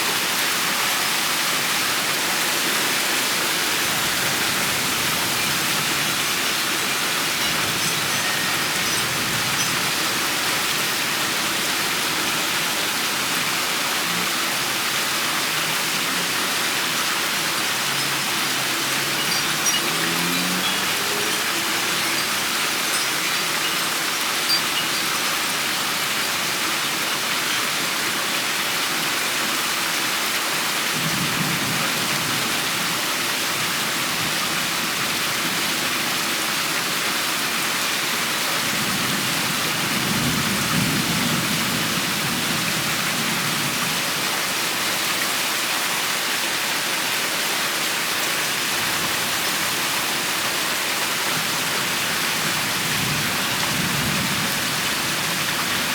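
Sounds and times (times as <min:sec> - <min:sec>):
steady rain: 0:00.0 - 0:55.9.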